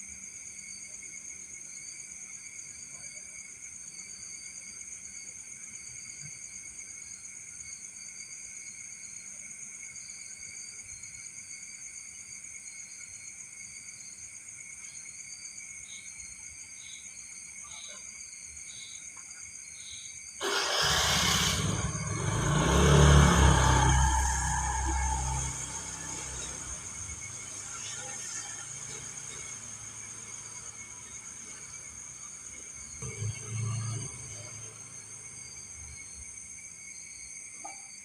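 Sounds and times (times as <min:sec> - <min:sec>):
crickets chorus: 0:00.0 - 0:38.0
sudden rush of noise: 0:20.4 - 0:30.8, 0:33.0 - 0:36.0.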